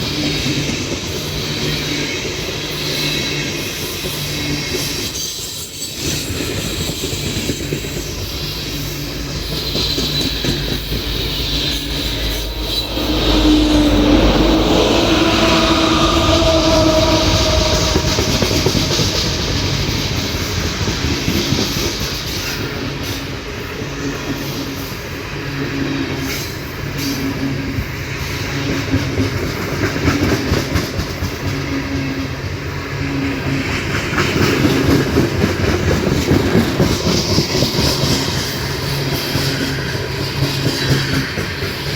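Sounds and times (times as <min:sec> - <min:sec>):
freight train rumbling past: 0:00.0 - 0:41.9
wheel squeal: 0:06.9 - 0:21.4.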